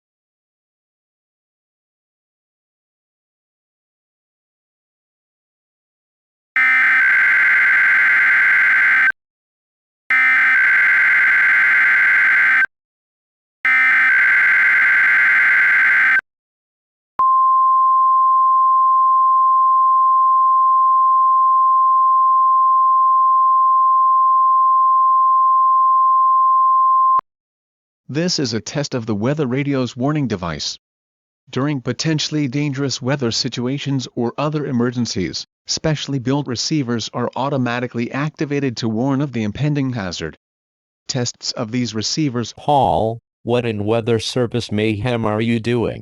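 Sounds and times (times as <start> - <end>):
rapid data tone bursts: 6.6 - 9.1, 10.1 - 12.7, 13.7 - 16.2
steady warning alarm tone: 6.6 - 9.2, 10.1 - 12.7, 13.7 - 16.2.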